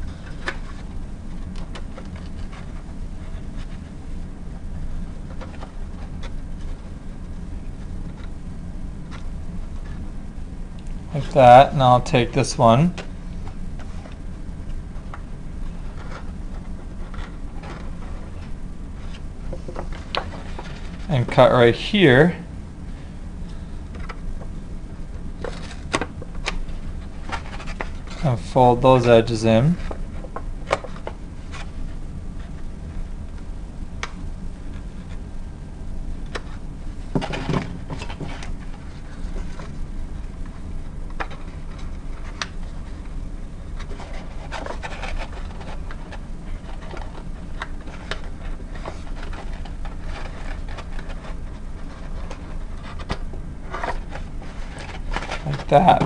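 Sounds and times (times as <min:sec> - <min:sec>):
steady low hum: 0:00.0 - 0:56.0
paper crinkling and tapping: 0:43.8 - 0:56.0.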